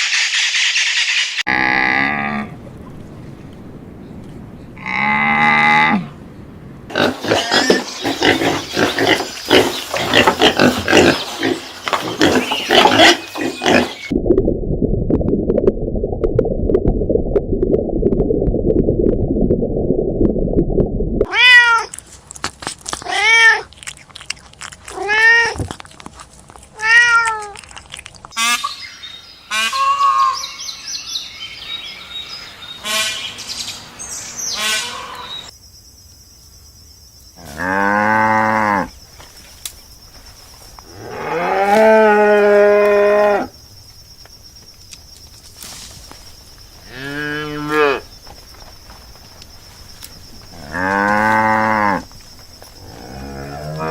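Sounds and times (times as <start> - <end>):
pigs grunting: 6.9 - 14.1
cat meowing: 21.3 - 21.9, 26.8 - 27.6.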